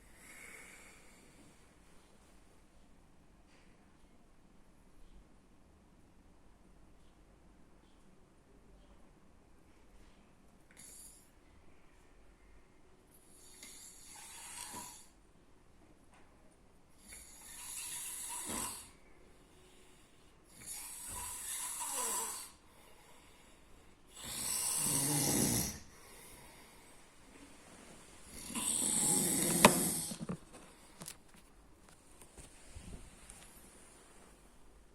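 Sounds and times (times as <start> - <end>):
person snoring: 17.1 - 19.0, 20.6 - 22.6, 24.1 - 26.4, 28.3 - 30.3.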